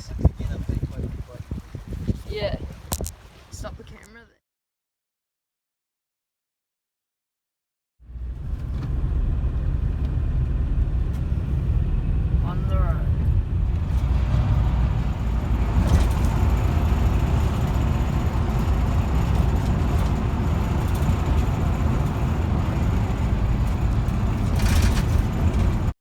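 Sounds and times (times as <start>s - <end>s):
car engine and road noise: 0.0s - 4.2s, 8.0s - 26.0s
short rattle: 13.8s - 25.9s.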